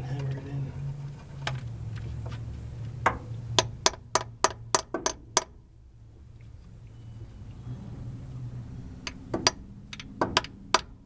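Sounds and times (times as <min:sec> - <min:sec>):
hammer tapping on metal: 0:03.1 - 0:05.6, 0:09.1 - 0:10.9.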